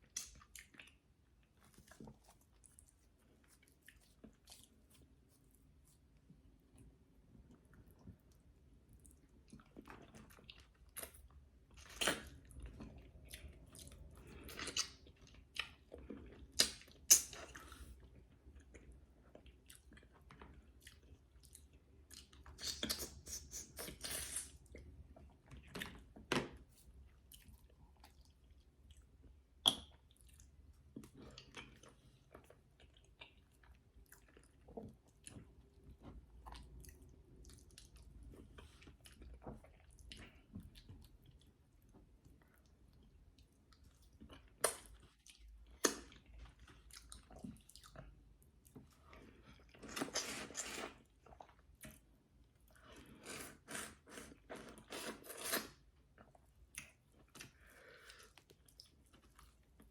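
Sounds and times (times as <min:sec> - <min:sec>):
close chewing: 0:00.0 - 0:05.9.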